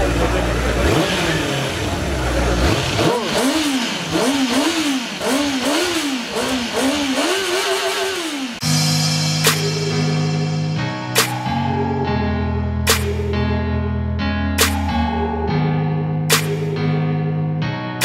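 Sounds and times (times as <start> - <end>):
crowd chatter: 0.0 - 2.7
motorcycle engine revving: 0.0 - 8.7
loud low rumble: 8.6 - 17.0.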